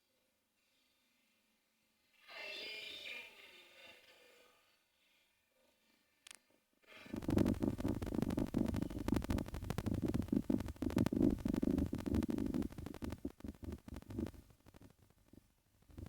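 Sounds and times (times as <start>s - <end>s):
kitten purring: 7.1s - 16.0s.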